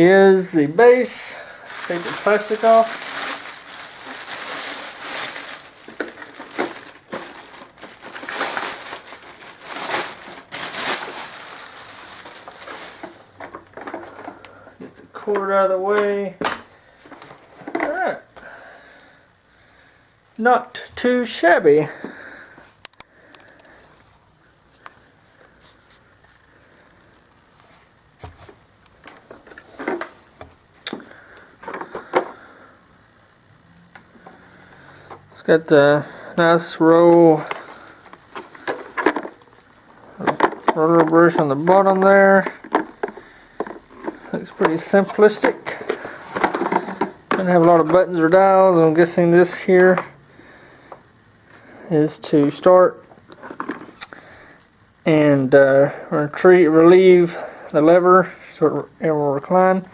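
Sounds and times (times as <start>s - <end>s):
plastic wrapping crinkling: 0.8s - 16.2s, 35.0s - 50.1s
hands handling plastic: 0.9s - 18.2s, 27.6s - 32.4s, 36.4s - 50.1s.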